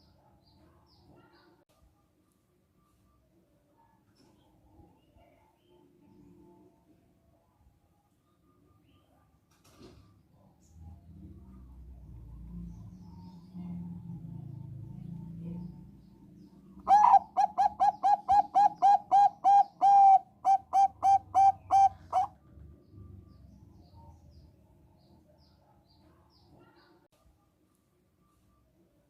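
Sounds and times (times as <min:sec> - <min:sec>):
dove cooing: 0:16.8 - 0:22.4.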